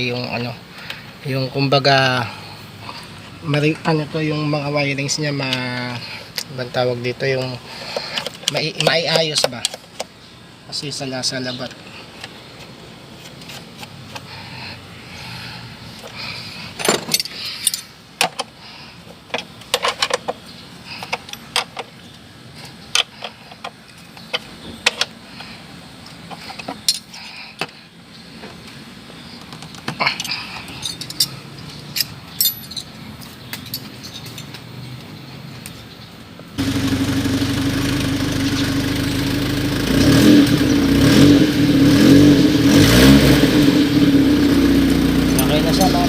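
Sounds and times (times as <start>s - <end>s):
car engine running: 36.6s - 42.7s.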